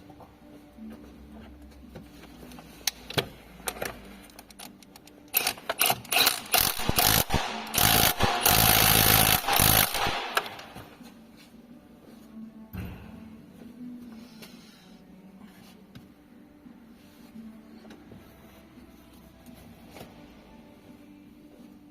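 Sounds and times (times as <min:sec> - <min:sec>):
impact wrench bursts: 0:05.4 - 0:10.8.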